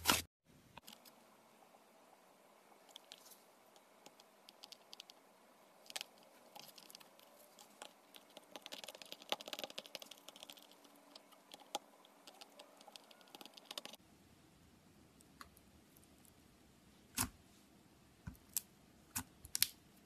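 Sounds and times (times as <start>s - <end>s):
slime clicking and crackling: 5.8s - 14.0s.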